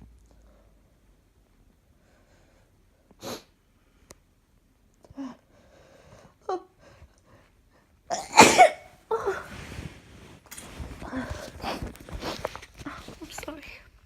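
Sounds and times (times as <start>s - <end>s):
person sniffing: 3.2s - 3.5s
person sneezing: 8.1s - 9.4s.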